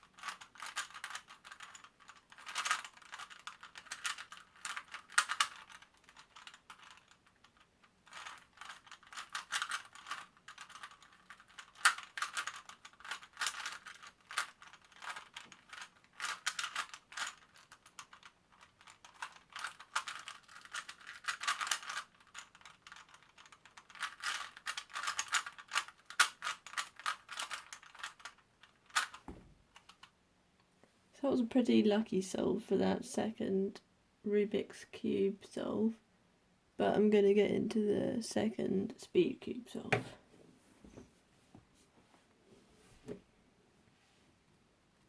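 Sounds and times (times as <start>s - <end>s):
puzzle cube plastic clicks: 0.0s - 30.1s.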